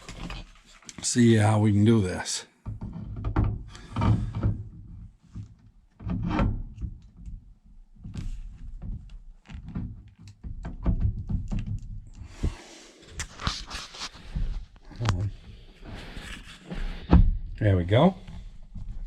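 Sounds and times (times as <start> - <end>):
parts knocking and clunking: 2.6 - 12.6
scraping rustle: 12.3 - 17.1.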